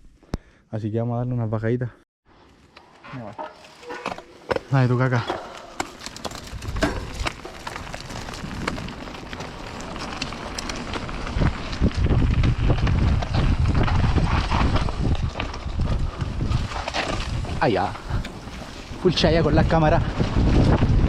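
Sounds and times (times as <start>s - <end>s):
low rumble of wind: 4.1s - 21.0s
bike frame rattling and knocking: 5.8s - 13.2s.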